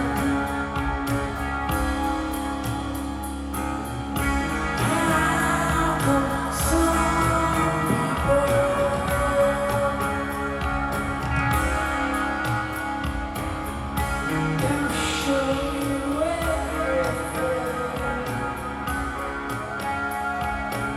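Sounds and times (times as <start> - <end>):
person singing: 0.0 - 2.1, 4.3 - 11.7, 14.0 - 19.6
drums and cymbals: 0.0 - 20.9
electric guitar: 0.0 - 20.9.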